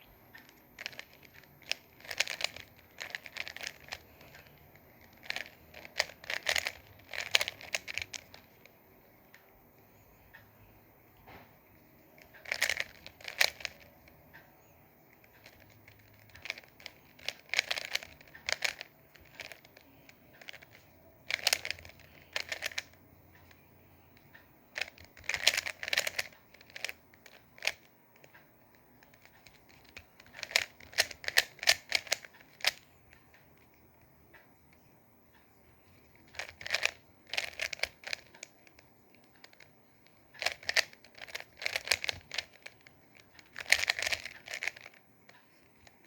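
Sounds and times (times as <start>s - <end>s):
plastic puzzle cube clicking: 0.8s - 8.7s, 12.2s - 14.2s, 15.2s - 23.6s, 24.2s - 33.0s, 36.2s - 45.0s.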